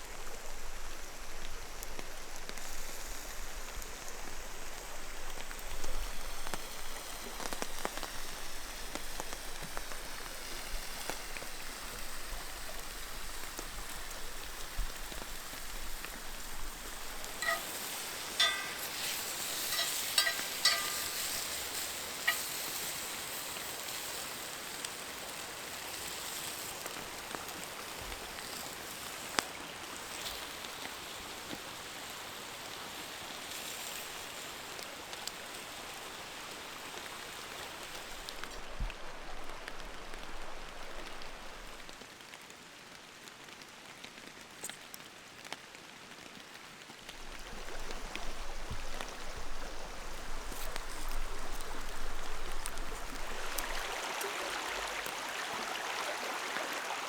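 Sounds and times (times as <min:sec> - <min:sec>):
rain drop ticks: 0:00.0 - 0:24.0, 0:47.0 - 0:54.0
rushing water: 0:00.0 - 0:57.0
steady rain hiss: 0:00.0 - 0:57.0.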